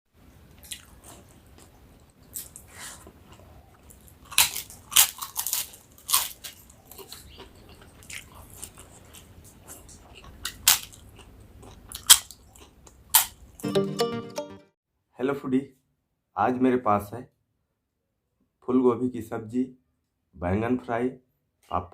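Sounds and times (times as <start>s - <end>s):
soft chewing: 0.4s - 13.4s.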